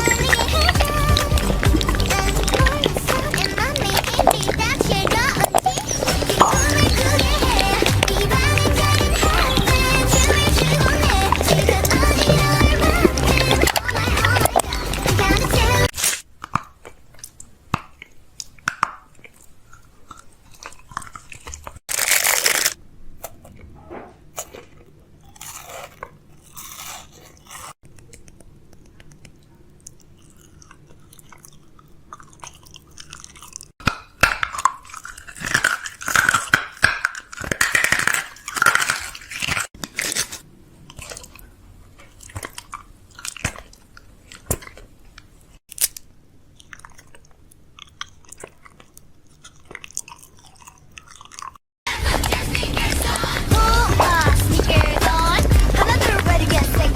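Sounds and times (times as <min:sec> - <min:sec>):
crunchy chewing: 0:00.0 - 0:56.9.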